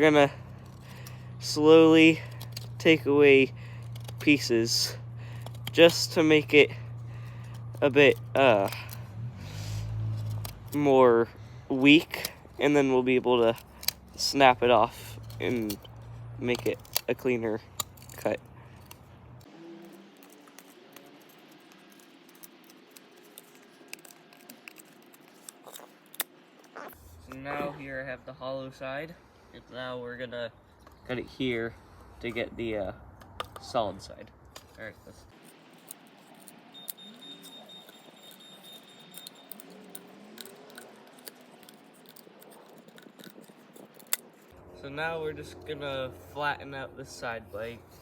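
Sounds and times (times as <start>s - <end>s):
blade scraping hollow stalk: 0.1s - 11.2s, 11.8s - 26.4s, 35.3s - 44.6s
knife cutting dry stem: 0.6s - 10.8s, 13.4s - 15.9s.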